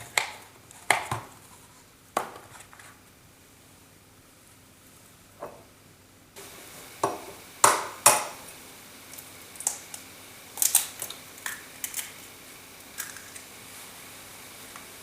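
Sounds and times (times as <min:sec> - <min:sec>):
eggs cracked against a bowl: 0:10.6 - 0:12.2, 0:12.9 - 0:13.5.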